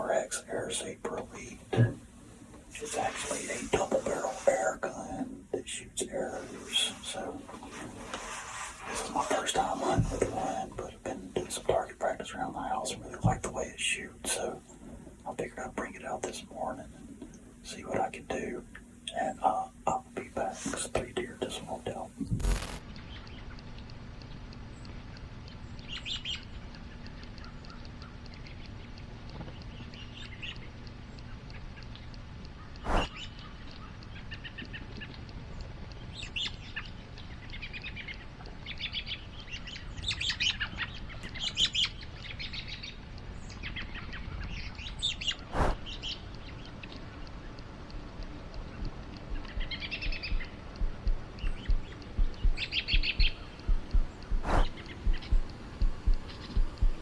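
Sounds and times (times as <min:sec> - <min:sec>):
songbirds chirping and trilling: 0:00.0 - 0:22.3, 0:22.9 - 0:57.0
low thumps: 0:01.4 - 0:02.8, 0:48.1 - 0:57.0
sharp clicks: 0:22.2 - 0:57.0.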